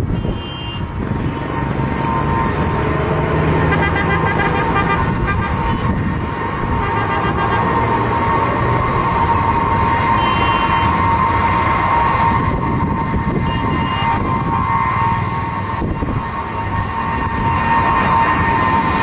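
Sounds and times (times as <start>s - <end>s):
jet engines whining: 0.1s - 19.0s.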